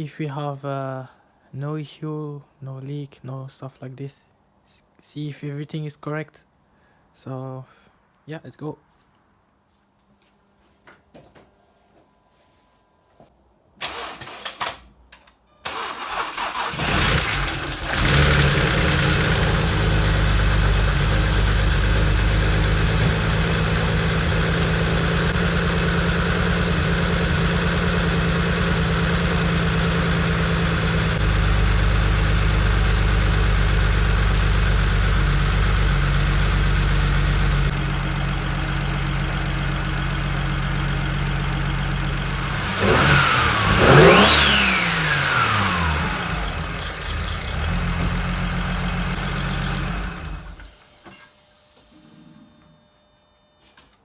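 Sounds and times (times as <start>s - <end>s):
starter cranking engine: 15.7s - 50.7s
car engine idling: 15.8s - 50.7s.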